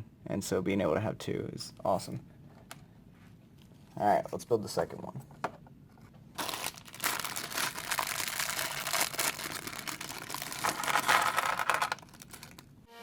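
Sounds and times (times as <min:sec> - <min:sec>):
plastic packaging crinkling: 0:06.4 - 0:12.8.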